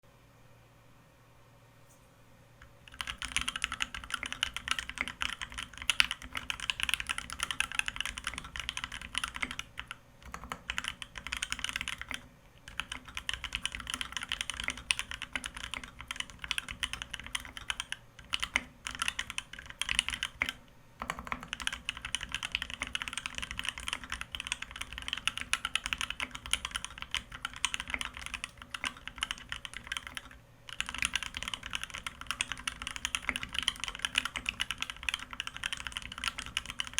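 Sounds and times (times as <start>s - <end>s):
typing on mechanical keyboard: 2.6s - 36.9s.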